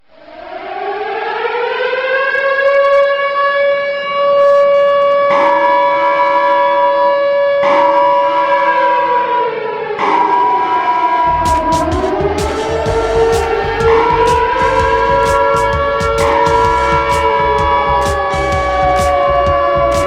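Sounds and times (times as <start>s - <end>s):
siren-like goal horn wail: 0.5s - 20.0s
lower horn tone: 11.3s - 20.0s.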